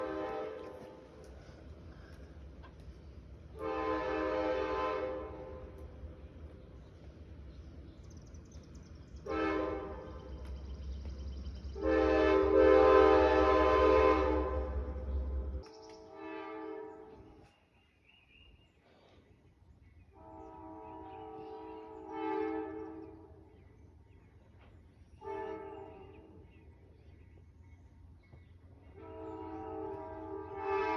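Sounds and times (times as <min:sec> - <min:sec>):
train air horn blasts: 0:00.0 - 0:01.4, 0:03.6 - 0:05.9, 0:09.3 - 0:10.4, 0:11.8 - 0:17.4, 0:20.2 - 0:23.3, 0:25.2 - 0:26.2, 0:28.9 - 0:30.9.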